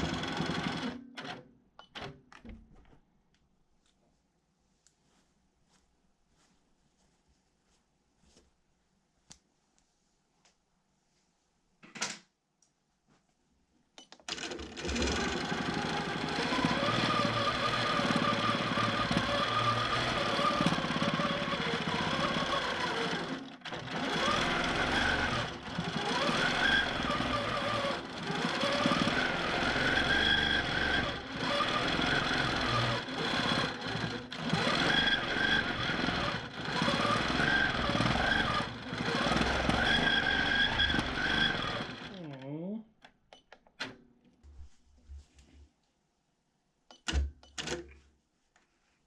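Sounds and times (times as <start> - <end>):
quilting machine motor whine: 14.4 - 42.2.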